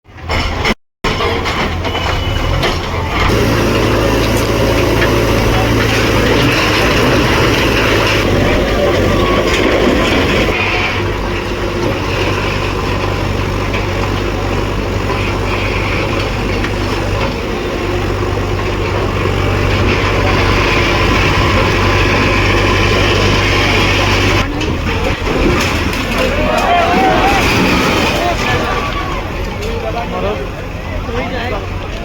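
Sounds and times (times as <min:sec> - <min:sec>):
machine engine humming: 0:02.5 - 0:32.0.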